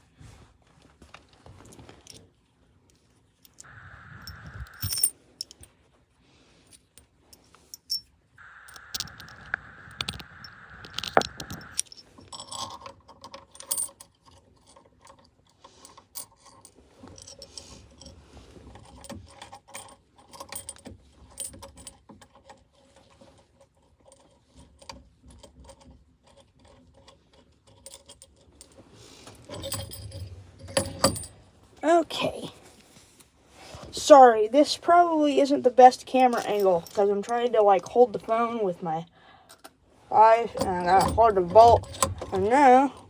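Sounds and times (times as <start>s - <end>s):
light metallic clicks and clinks: 3.4s - 5.7s, 6.7s - 18.2s, 29.4s - 31.4s, 40.5s - 43.0s.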